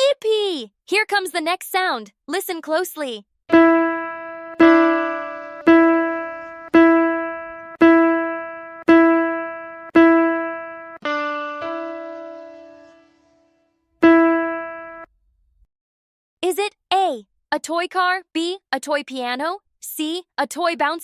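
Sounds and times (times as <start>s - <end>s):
toy piano notes: 3.5s - 13.2s, 14.0s - 15.0s.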